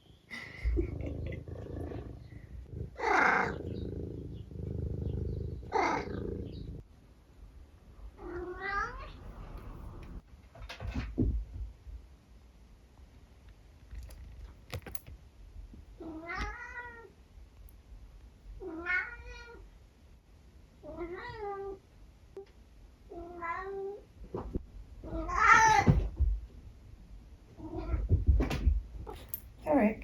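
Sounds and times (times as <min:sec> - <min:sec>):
cat meowing: 0:08.2 - 0:09.2.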